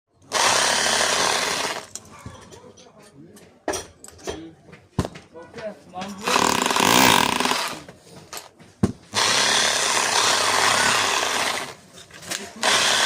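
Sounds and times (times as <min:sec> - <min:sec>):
rotary hammer drill running: 0:00.3 - 0:01.9, 0:06.2 - 0:07.8, 0:09.1 - 0:11.8, 0:12.6 - 0:13.0.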